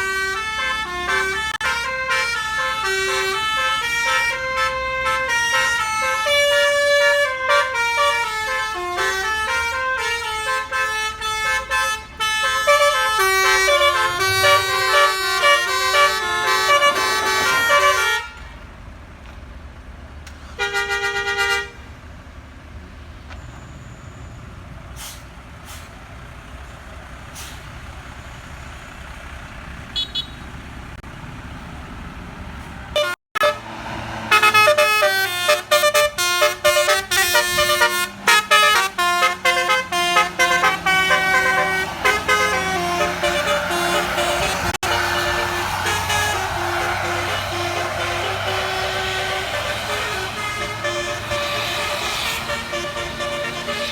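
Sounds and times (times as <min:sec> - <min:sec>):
multi-tone air horn melody: 0:00.0 - 0:18.4, 0:33.0 - 0:33.7, 0:34.3 - 0:53.9
short horn blast: 0:00.0 - 0:18.5, 0:33.0 - 0:53.9
vehicle noise: 0:00.0 - 0:53.9.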